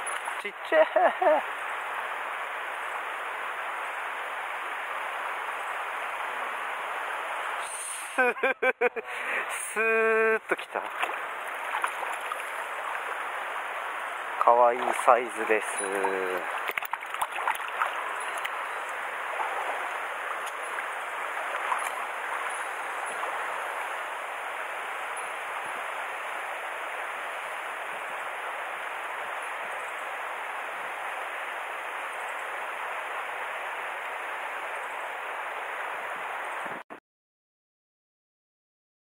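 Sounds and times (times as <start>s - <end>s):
stream water rushing: 0.0s - 36.8s.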